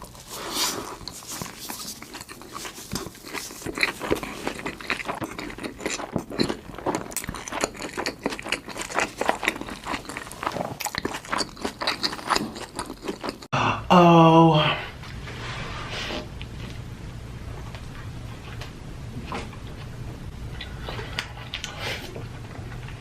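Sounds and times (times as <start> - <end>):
chewing and biting food: 0.0 - 13.5
wet mouth clicks and crunches: 1.0 - 13.5.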